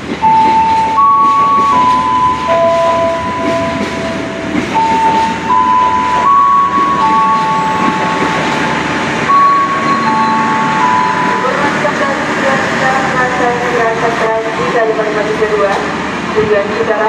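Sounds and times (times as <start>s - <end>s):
electric train rolling on track: 0.0s - 17.0s
wheel flanges squealing: 3.4s - 12.7s.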